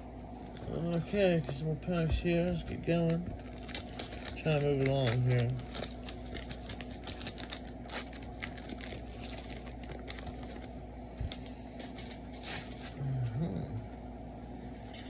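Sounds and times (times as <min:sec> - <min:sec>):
steady low hum: 0:00.0 - 0:15.0
trading cards rustling: 0:00.4 - 0:13.0
low murmur: 0:12.5 - 0:15.0.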